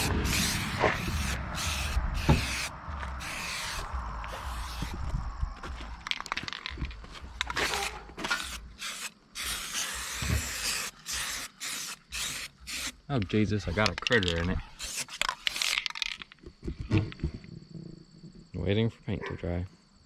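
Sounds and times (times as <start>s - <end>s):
aerosol spray can hissing: 0.0s - 5.0s, 7.6s - 13.0s
wind on microphone: 0.0s - 5.8s.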